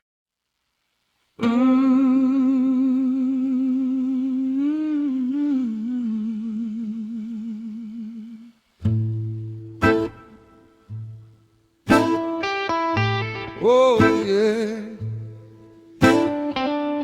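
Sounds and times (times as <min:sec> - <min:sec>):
person humming blues: 0:01.4 - 0:08.6, 0:13.5 - 0:16.4.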